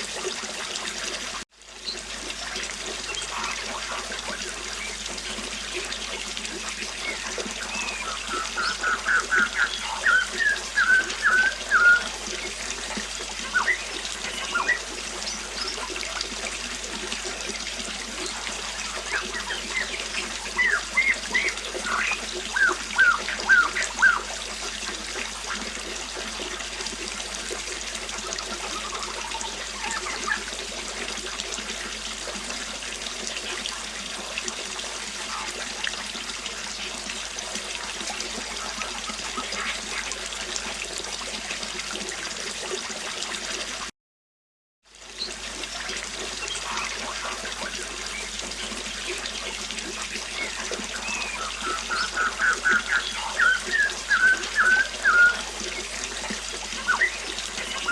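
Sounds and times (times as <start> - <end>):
river water flowing: 0.0 - 43.8, 45.1 - 57.9
songbird chirping: 7.0 - 12.5, 13.4 - 15.9, 18.2 - 24.3, 50.3 - 55.4.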